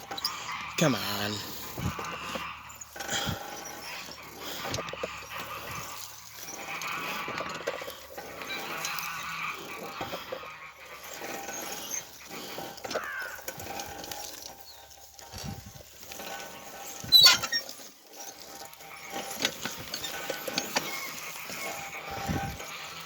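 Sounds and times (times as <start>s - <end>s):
chain rubbing: 0.0s - 23.0s
pedal car chain and wheels rattling: 0.0s - 23.0s.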